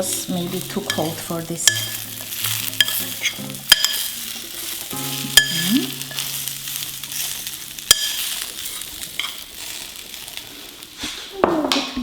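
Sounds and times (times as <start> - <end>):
food sizzling: 0.0 - 12.0
spoon clinking on glass dish: 0.9 - 2.0.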